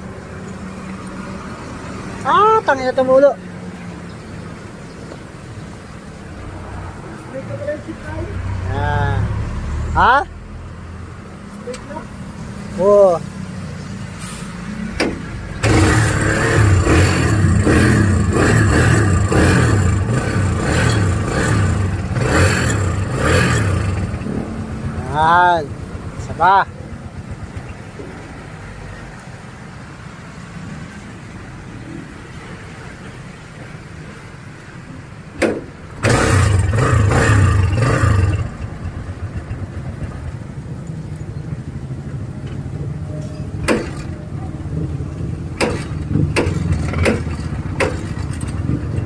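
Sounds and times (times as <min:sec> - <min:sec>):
motorcycle engine starting: 0:15.0 - 0:28.2, 0:35.6 - 0:41.2, 0:43.5 - 0:49.0.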